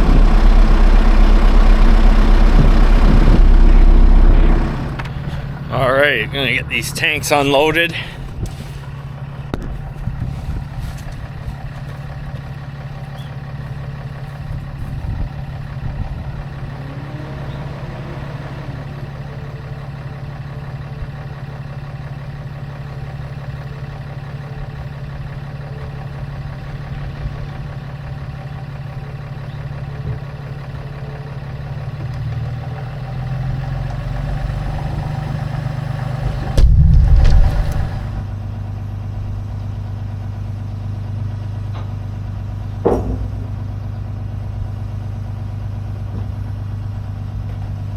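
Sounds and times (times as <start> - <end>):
engine running steadily: 0.0 - 47.9.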